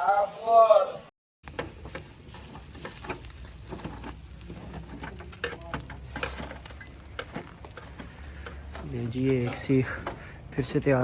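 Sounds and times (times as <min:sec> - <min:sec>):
kebabs sizzling on a grill: 0:00.0 - 0:11.0
meat crackling and popping: 0:01.4 - 0:10.3.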